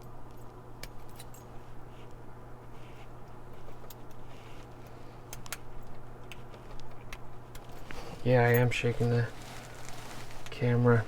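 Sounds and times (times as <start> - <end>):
steady low hum: 0.0 - 11.0
soft scraping: 7.8 - 11.0.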